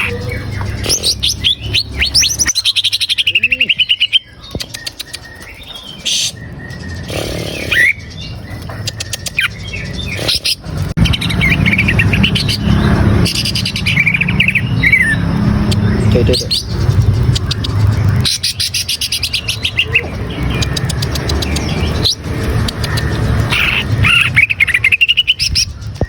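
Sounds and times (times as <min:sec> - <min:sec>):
bird singing chirps and whistles: 0:11.0 - 0:17.5.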